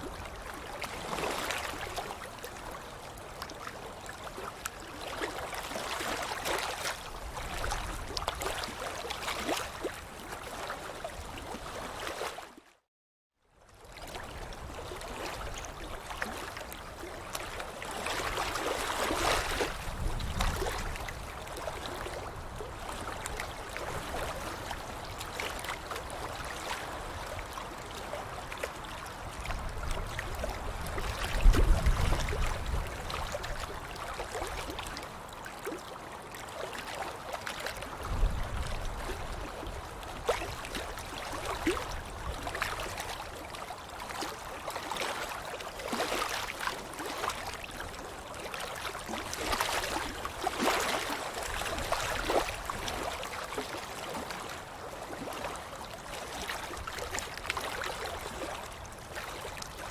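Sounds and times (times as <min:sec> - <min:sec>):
water splashing and sloshing: 0:00.0 - 0:12.9, 0:13.6 - 0:59.9.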